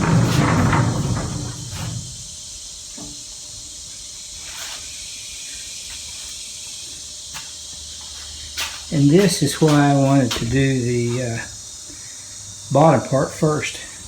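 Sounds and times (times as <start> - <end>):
heavy tool chest rolling rumble: 0.0 - 2.3
steady high hiss: 0.0 - 14.0.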